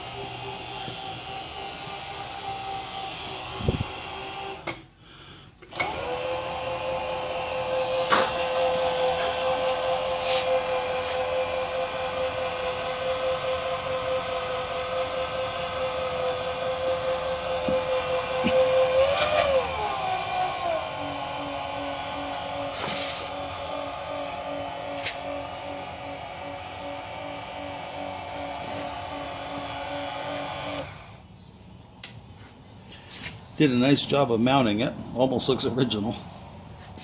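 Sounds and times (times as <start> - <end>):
power feed motor whining: 0.0 - 4.8, 5.7 - 31.4
sharp clicks: 32.0 - 32.2.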